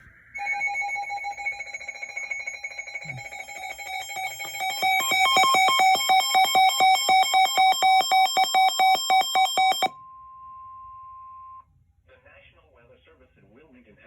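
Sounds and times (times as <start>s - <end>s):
rapid two-pitch beeps: 0.4s - 9.9s.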